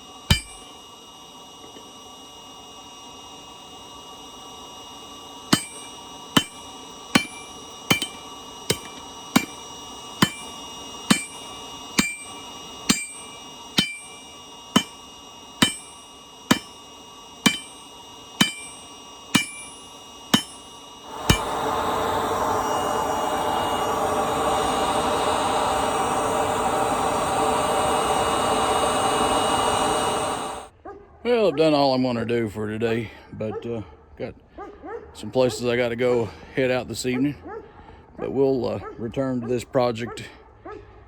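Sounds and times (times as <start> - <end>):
hammer ringing on anvil: 0.3 - 0.8, 5.5 - 16.8, 17.4 - 22.0.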